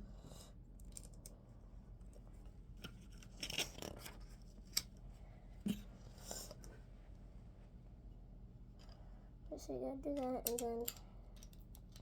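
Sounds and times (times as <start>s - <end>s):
plastic bricks clicking together: 10.2s - 12.0s.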